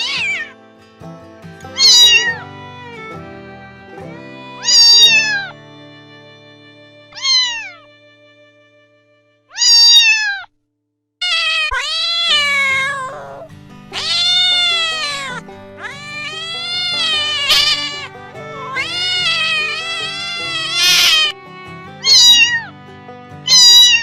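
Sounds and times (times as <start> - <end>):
cat meowing: 0.0 - 0.5, 1.7 - 3.2, 4.1 - 5.6, 7.1 - 7.9, 9.5 - 10.5, 11.2 - 21.4, 22.0 - 22.8, 23.4 - 24.0
background music: 0.0 - 7.4, 12.6 - 24.0.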